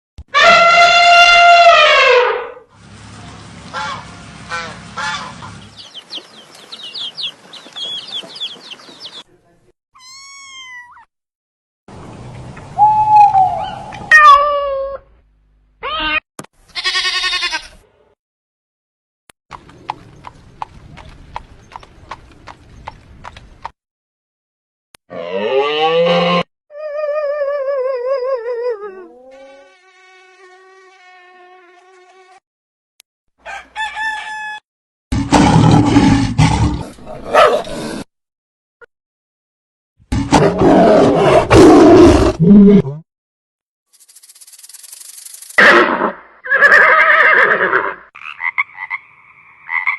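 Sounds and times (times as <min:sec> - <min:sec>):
animal calls: 0:04.6 - 0:09.2.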